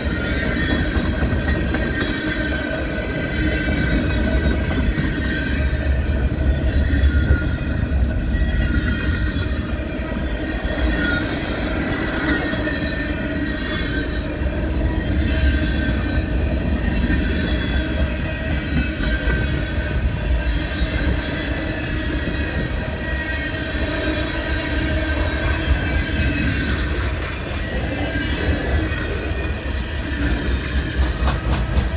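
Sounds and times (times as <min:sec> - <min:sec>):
railcars rumbling: 0:00.0 - 0:31.9
steel wheels squealing: 0:00.0 - 0:31.9.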